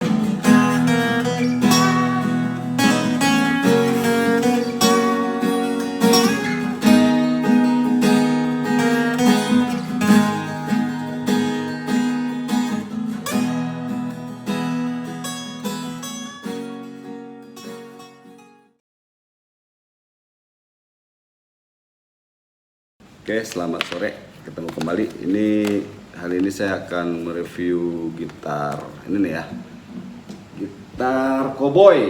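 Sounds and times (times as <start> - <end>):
acoustic guitar strumming chords: 0.0 - 18.8.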